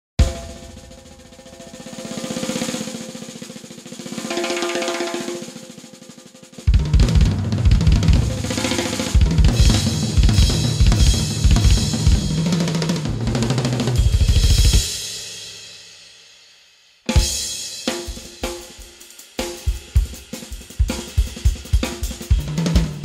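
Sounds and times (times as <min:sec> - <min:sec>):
heavy drum hits with bass: 0:00.2 - 0:03.5, 0:06.7 - 0:15.0, 0:19.4 - 0:23.0
cymbals: 0:00.2 - 0:23.0.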